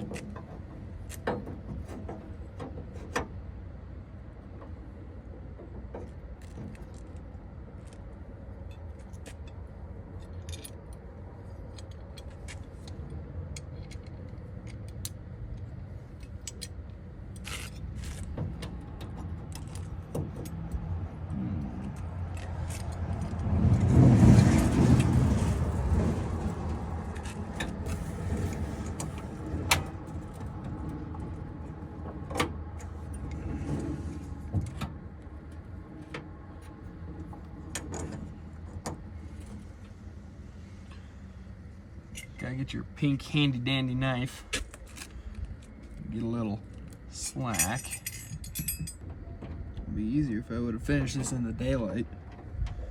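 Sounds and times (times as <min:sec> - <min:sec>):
vehicle passing: 0:19.7 - 0:32.0
metal hardware clinking: 0:47.4 - 0:49.0.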